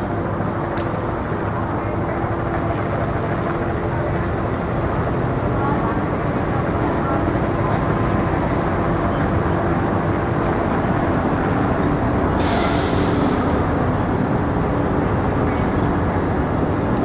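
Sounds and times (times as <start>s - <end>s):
city street traffic: 0.0s - 17.0s
sharp hiss of air: 12.4s - 13.7s.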